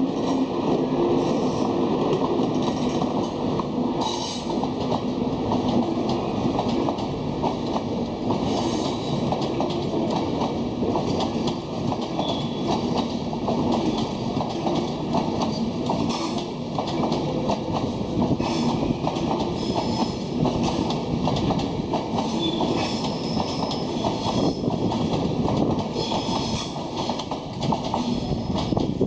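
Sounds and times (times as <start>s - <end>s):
train rumbling: 0.0s - 29.0s
wheels clicking over rail joints: 4.0s - 29.0s.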